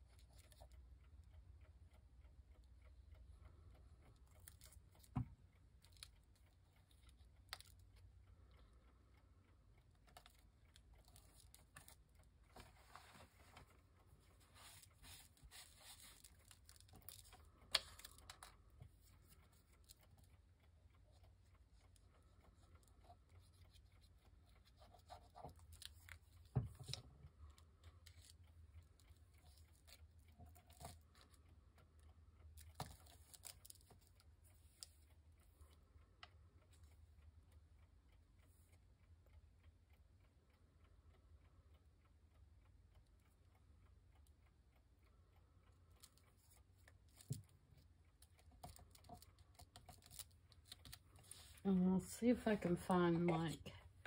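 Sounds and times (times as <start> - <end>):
paper rustling and scraping: 12.6 - 13.7, 14.4 - 18.1.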